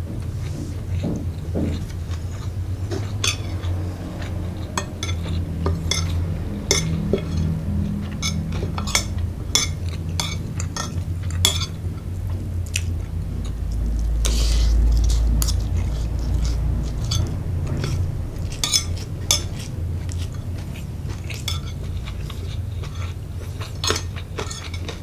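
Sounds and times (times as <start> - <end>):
steady low hum: 0.0 - 25.0
cutlery clinking on a plate: 0.5 - 11.8, 21.2 - 25.0.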